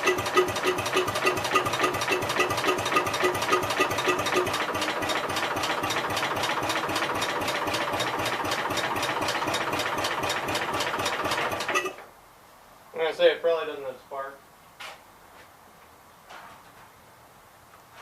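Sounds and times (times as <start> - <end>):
tractor engine cranking on starter: 0.0 - 12.0.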